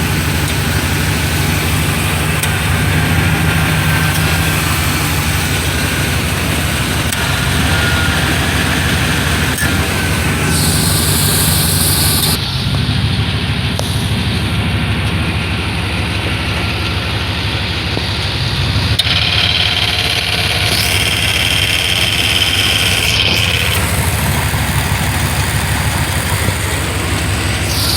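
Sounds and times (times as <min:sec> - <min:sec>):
car engine idling: 0:00.0 - 0:27.9
click: 0:13.8 - 0:14.0.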